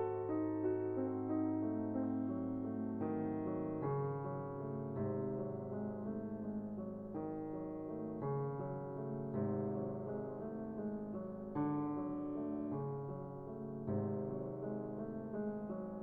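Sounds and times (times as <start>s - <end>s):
soft piano chords: 0.0s - 16.0s.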